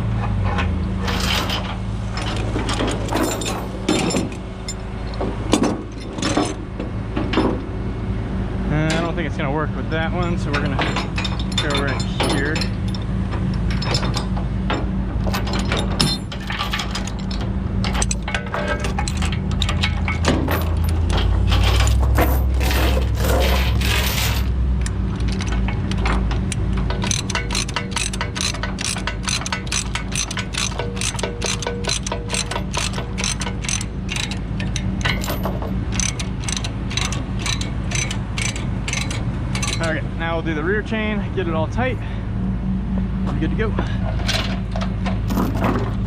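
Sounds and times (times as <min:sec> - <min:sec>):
engine running: 0:00.0 - 0:46.0
steady low hum: 0:00.0 - 0:46.0
chain links clinking: 0:01.0 - 0:06.6, 0:10.5 - 0:24.6, 0:26.9 - 0:40.0, 0:44.1 - 0:46.0
ratchet pawl clicking: 0:24.8 - 0:39.8.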